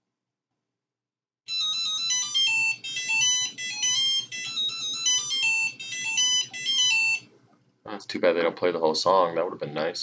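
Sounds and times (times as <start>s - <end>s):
electronic ringtone melody: 1.5s - 7.3s.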